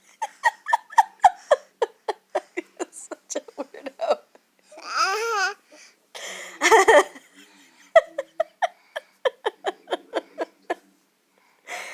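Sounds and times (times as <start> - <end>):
girl laughing: 0.1 - 4.2.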